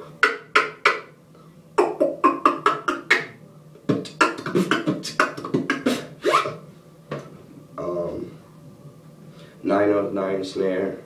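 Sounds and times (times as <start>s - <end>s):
beatboxed snare hits: 0.0s - 1.1s, 1.8s - 6.6s.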